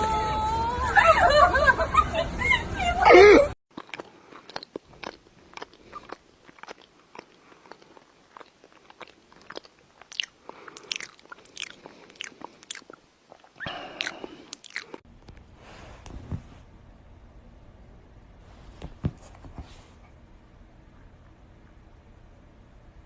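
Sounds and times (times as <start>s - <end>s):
animal crunching food: 3.7s - 15.0s
low hum: 19.9s - 23.0s.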